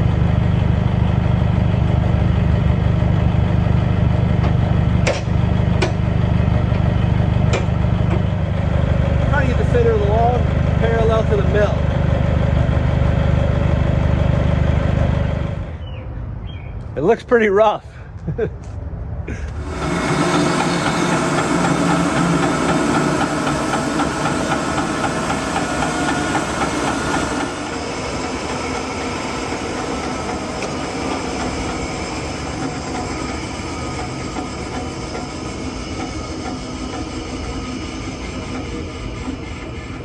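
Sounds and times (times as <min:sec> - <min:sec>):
band sawmill cutting log: 0:00.0 - 0:15.8, 0:19.5 - 0:40.0.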